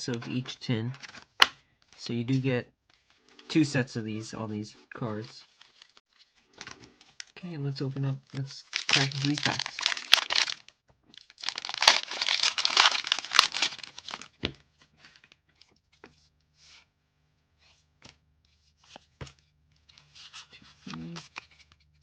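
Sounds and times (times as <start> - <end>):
foil wrapper tearing and crinkling: 8.6 - 14.3.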